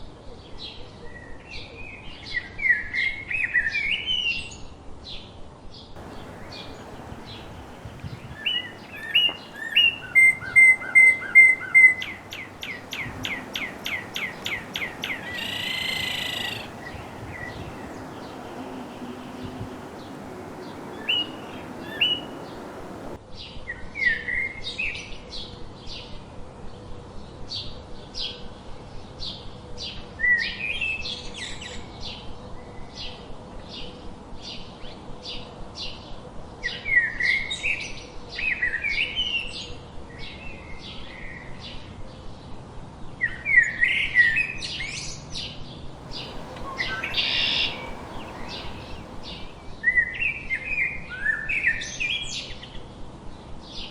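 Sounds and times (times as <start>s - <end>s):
background hiss: 6.0s - 23.2s, 46.0s - 49.8s
songbirds chirping: 6.0s - 23.2s, 46.0s - 49.8s
warbled bird phrases: 6.0s - 23.2s, 46.0s - 49.7s.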